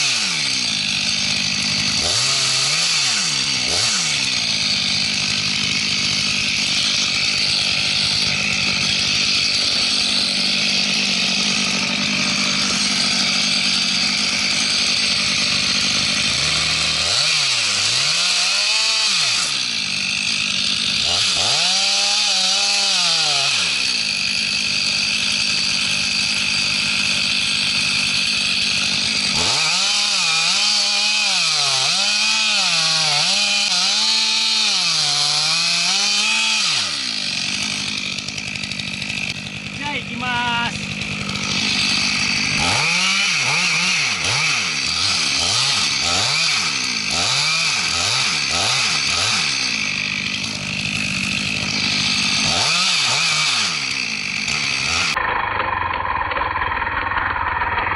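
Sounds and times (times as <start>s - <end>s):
chainsaw cutting wood: 0.0s - 57.9s.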